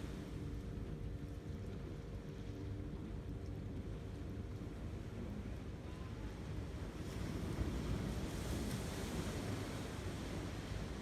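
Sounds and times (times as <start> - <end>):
wind: 0.0 - 11.0
sea waves on a beach: 6.3 - 11.0.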